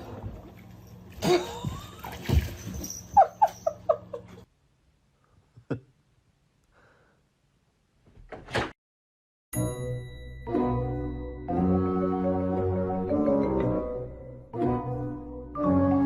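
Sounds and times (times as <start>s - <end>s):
background noise: 0.0s - 8.8s.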